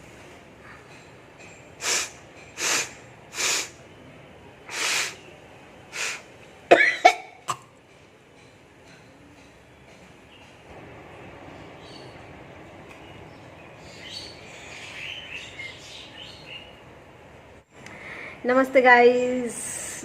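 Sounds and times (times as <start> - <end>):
person blowing nose: 1.8 - 3.8, 4.7 - 5.2, 5.9 - 6.3.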